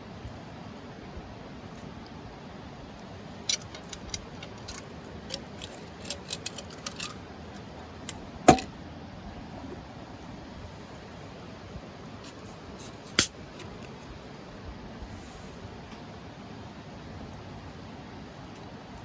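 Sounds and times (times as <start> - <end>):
small hard objects clicking: 3.4 - 8.7.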